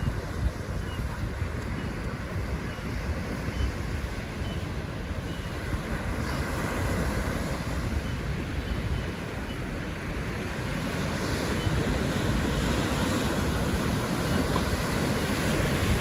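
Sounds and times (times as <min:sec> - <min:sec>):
surf breaking on beach: 0:09.9 - 0:16.0.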